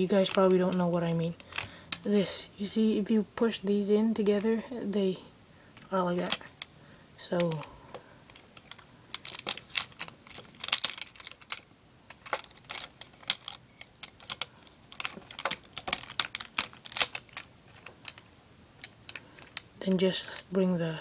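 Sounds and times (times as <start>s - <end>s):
plastic toy parts clicking: 0.0s - 2.0s, 5.8s - 19.7s.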